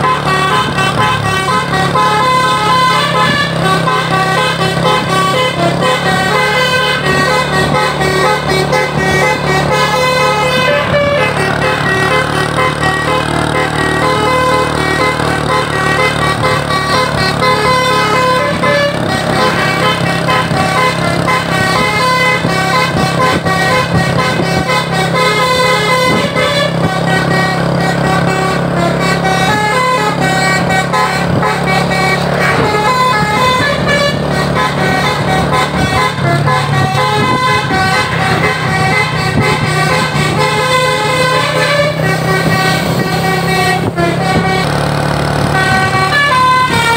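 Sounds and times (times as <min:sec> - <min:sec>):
engine hum: 0:00.0 - 0:46.9
multi-tone air horn melody: 0:00.0 - 0:46.9.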